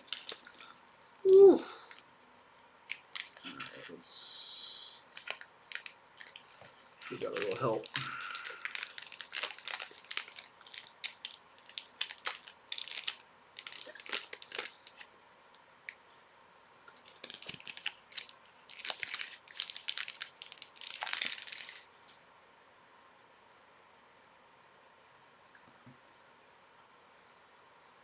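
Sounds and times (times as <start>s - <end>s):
plastic wrapping crinkling: 0.0s - 1.0s, 2.9s - 4.0s, 5.1s - 15.1s, 16.8s - 22.2s.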